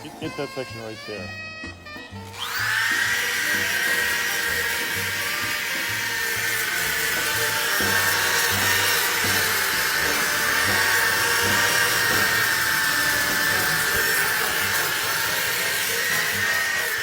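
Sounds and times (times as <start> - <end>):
background music with bass line: 0.0 - 14.6
power tool whine: 0.0 - 17.0.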